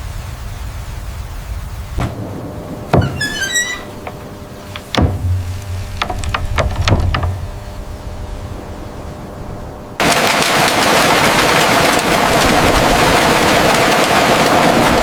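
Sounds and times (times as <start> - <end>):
high chirping squeaks: 3.0 - 6.3
sharp knocks and clacks: 3.0 - 7.5
low rumble: 3.9 - 8.8.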